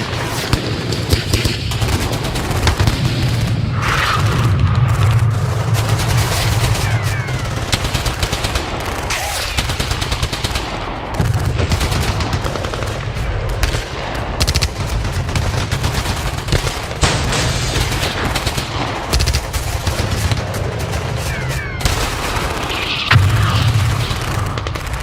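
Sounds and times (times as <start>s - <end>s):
low rumble of explosions: 0.0s - 25.0s
single gunshots: 0.0s - 25.0s
automatic gunfire bursts: 5.8s - 25.0s.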